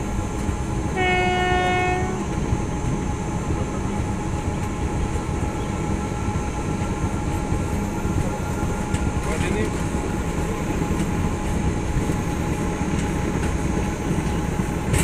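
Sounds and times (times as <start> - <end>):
train rumbling along track: 0.0 - 15.0
train horn: 0.9 - 2.4.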